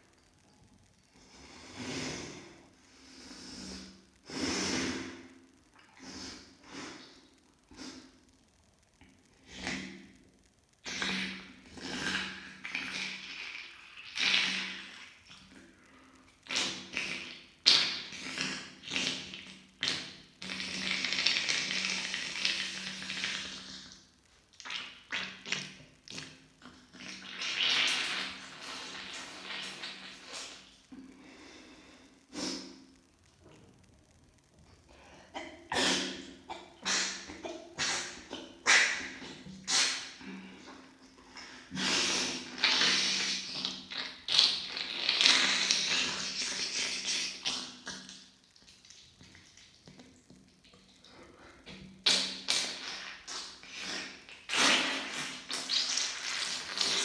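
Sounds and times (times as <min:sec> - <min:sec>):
woman blowing nose: 0:35.7 - 0:40.3, 0:41.7 - 0:43.7, 0:53.7 - 0:57.0.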